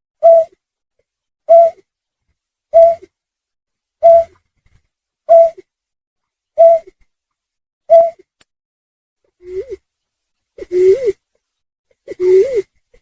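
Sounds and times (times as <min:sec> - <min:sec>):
snipe lure calls: 0:00.2 - 0:00.5, 0:01.5 - 0:01.8, 0:02.7 - 0:03.1, 0:04.0 - 0:04.3, 0:05.3 - 0:05.6, 0:06.6 - 0:06.9, 0:07.9 - 0:08.2.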